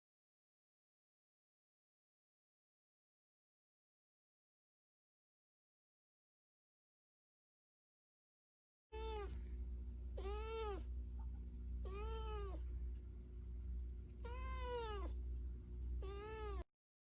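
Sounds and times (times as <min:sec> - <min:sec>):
cat meowing: 0:09.0 - 0:09.4, 0:10.2 - 0:10.9, 0:11.8 - 0:12.7, 0:14.2 - 0:15.2, 0:16.0 - 0:16.7
steady low hum: 0:09.0 - 0:16.7.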